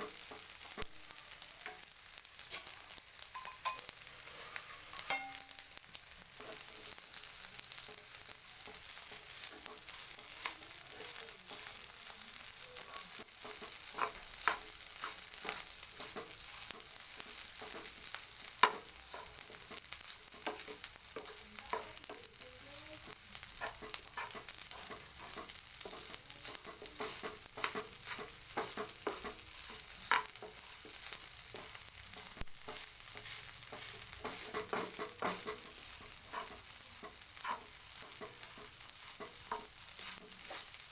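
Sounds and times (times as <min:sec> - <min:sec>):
rice sizzling in a pan: 0:00.0 - 0:40.9
stirring clicks and knocks: 0:13.0 - 0:22.3, 0:23.0 - 0:40.9.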